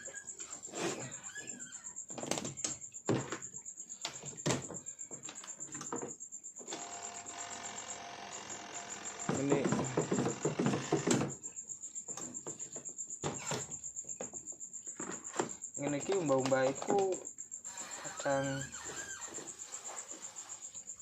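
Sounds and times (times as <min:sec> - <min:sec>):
crickets chirping: 0:00.0 - 0:21.0
spin dryer motor hum: 0:06.8 - 0:11.1.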